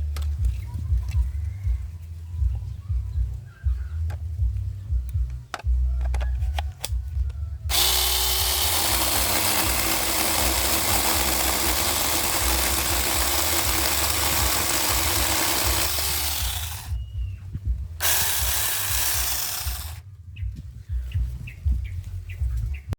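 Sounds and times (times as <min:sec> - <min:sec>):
mini chainsaw cutting wood: 0:07.7 - 0:17.0, 0:18.0 - 0:20.0.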